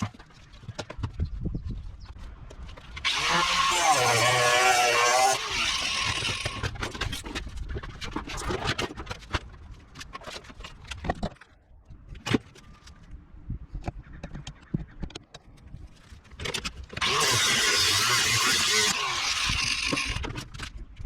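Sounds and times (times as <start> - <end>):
power tool running: 3.0 - 6.7, 17.0 - 20.2.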